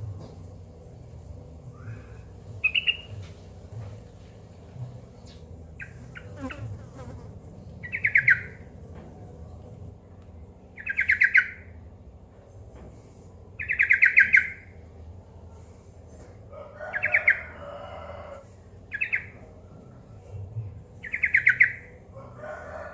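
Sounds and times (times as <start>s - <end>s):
bird chirps: 2.6s - 3.2s, 10.8s - 11.6s, 13.6s - 14.6s, 18.9s - 19.4s, 21.0s - 21.8s.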